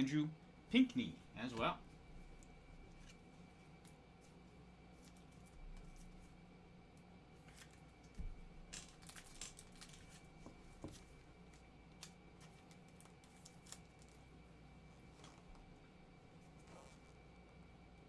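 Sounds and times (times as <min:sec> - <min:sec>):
foil wrapper crinkling and tearing: 0:08.8 - 0:10.3, 0:12.0 - 0:14.2.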